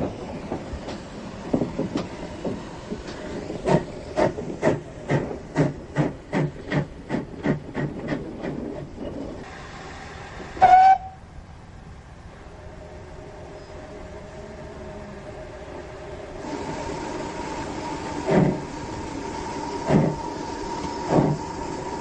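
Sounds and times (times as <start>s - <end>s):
train wheels clicking on rail joints: 0.0s - 9.5s, 16.4s - 22.0s
train whistle toot: 10.6s - 11.2s.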